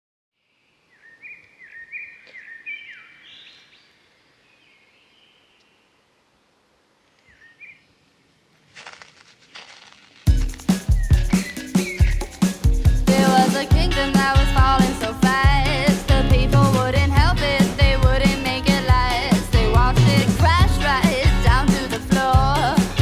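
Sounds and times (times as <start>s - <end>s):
bird chirps: 0.4s - 6.0s, 10.3s - 13.0s
loud music with heavy beat: 10.3s - 23.0s.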